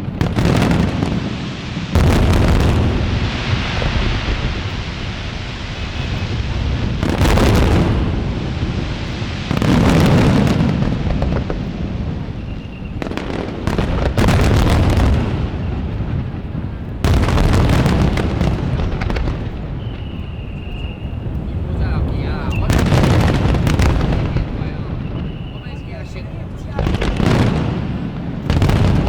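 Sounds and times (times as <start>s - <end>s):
deep rumble of barrage: 0.0s - 29.0s
fireworks booming: 0.0s - 29.0s
fireworks crackling: 0.0s - 29.0s.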